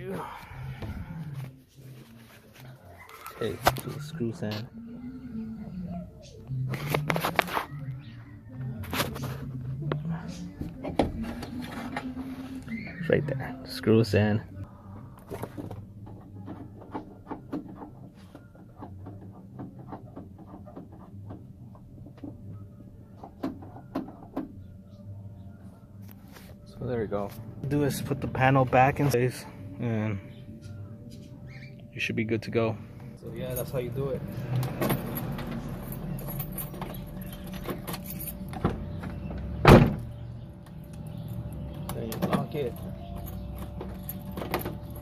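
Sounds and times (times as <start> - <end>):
keys jingling: 34.6 - 38.6.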